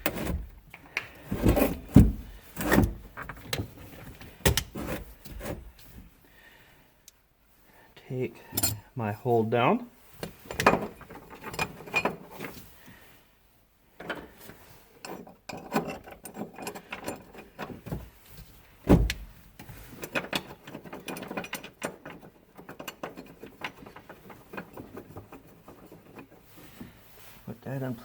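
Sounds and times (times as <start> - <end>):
metal clicks and clanks: 0.0 - 5.9, 10.2 - 12.5, 14.0 - 18.0, 18.9 - 26.6.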